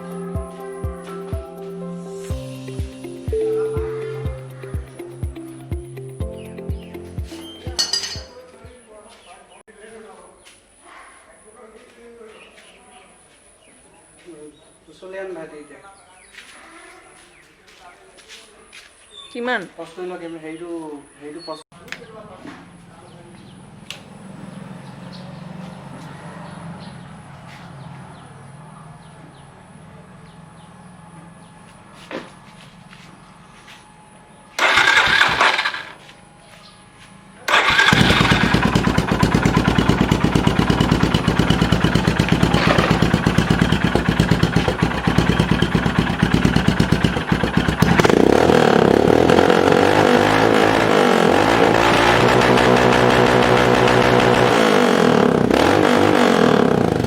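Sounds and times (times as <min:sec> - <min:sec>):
motorcycle engine idling loudly: 0:34.6 - 0:35.9, 0:37.5 - 0:57.0.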